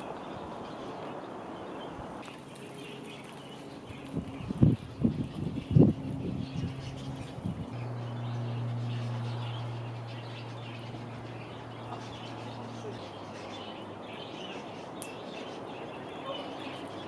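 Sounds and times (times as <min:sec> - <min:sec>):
small birds chirping: 0:00.0 - 0:17.0
steady low hum: 0:00.0 - 0:17.0.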